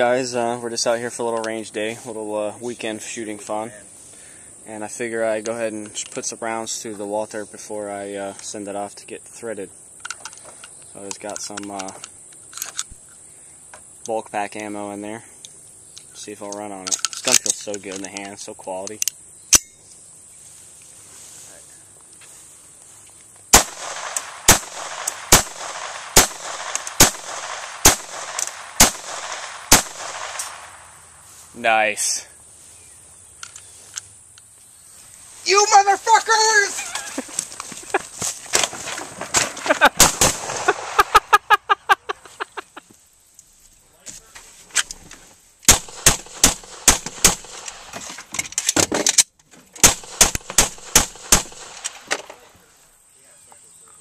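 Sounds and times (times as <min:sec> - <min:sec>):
pistol shots: 0:23.5 - 0:30.8, 0:39.9 - 0:41.2, 0:45.7 - 0:47.9, 0:49.8 - 0:52.1
semi-automatic gunshots: 0:23.5 - 0:30.9, 0:39.8 - 0:41.4, 0:45.7 - 0:47.9, 0:49.8 - 0:52.1
faint cracks and clicks: 0:24.9 - 0:27.6, 0:28.2 - 0:28.6.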